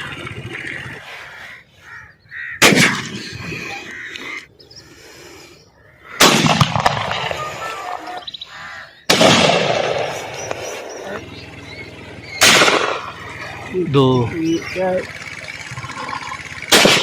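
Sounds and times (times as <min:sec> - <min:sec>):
shotgun shots: 0:02.6 - 0:03.3, 0:06.2 - 0:07.6, 0:09.1 - 0:10.7, 0:12.4 - 0:13.3, 0:16.6 - 0:17.0.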